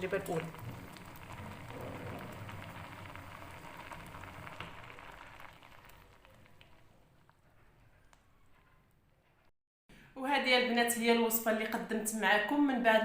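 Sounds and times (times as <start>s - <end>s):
pot bubbling and crackling: 0.0s - 9.5s.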